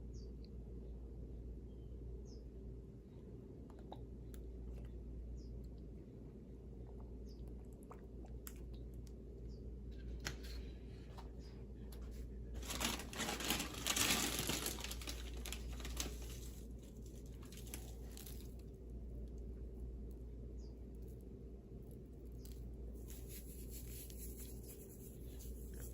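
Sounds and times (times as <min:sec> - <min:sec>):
packaging crinkling: 0:12.6 - 0:18.8.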